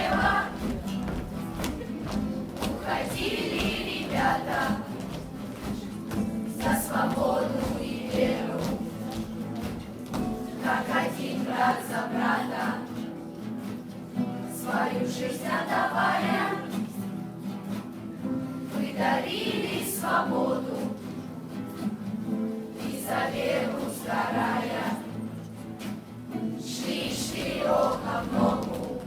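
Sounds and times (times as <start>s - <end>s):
choir-like voices singing: 0.0s - 13.3s, 14.4s - 17.2s, 18.6s - 21.5s, 22.5s - 25.6s, 26.3s - 29.0s.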